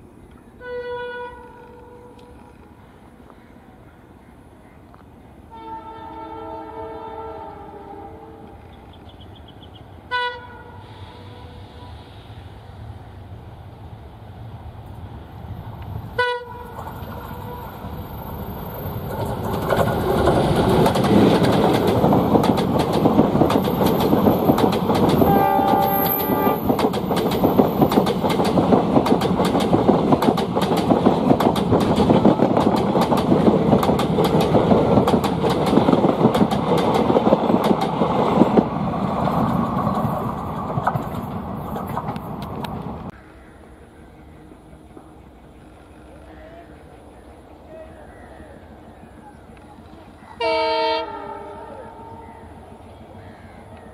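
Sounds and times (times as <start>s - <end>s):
train horn blast: 0.6s - 2.4s, 5.5s - 8.6s, 10.1s - 11.9s, 16.2s - 17.9s, 25.2s - 26.8s, 50.4s - 52.2s
train wheels clattering over rail joints: 18.9s - 42.9s.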